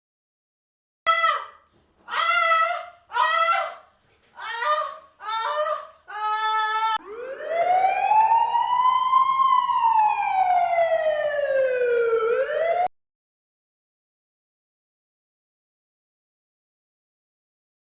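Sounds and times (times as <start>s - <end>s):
dog howling: 1.1s - 3.8s, 4.4s - 7.0s.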